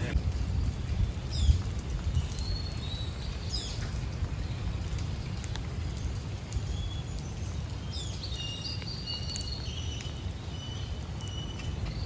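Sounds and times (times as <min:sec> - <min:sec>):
steady low rumble: 0:00.0 - 0:00.8.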